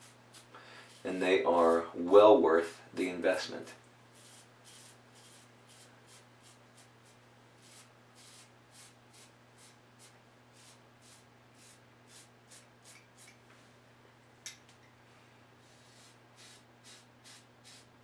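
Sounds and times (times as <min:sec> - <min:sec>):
steady low hum: 0:00.0 - 0:18.0
razor scraping stubble: 0:04.2 - 0:13.4.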